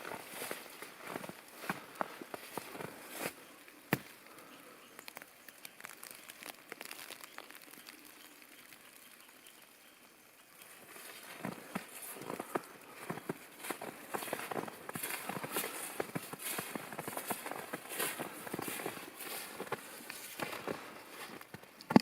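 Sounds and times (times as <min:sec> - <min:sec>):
footsteps crunching through snow: 0:00.0 - 0:04.4, 0:10.6 - 0:21.6
faint crackling and ticking: 0:00.0 - 0:22.0.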